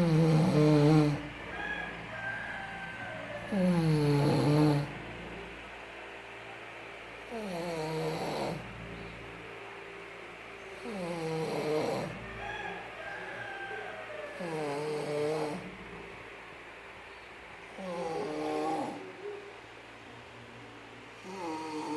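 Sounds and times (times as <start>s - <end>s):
person snoring: 0.0s - 1.3s, 3.4s - 5.0s, 7.3s - 8.8s, 10.8s - 12.2s, 14.3s - 15.8s, 17.7s - 19.1s, 21.2s - 21.9s.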